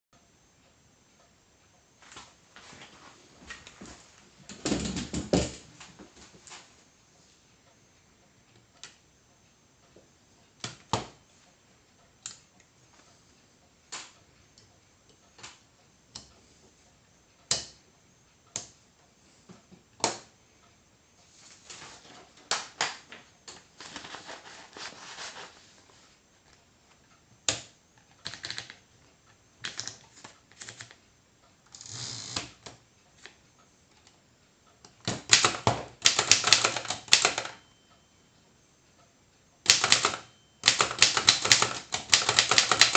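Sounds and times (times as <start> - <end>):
typewriter key strikes: 35.1 - 37.6, 39.7 - 42.9
typewriter scraping: 39.7 - 42.9.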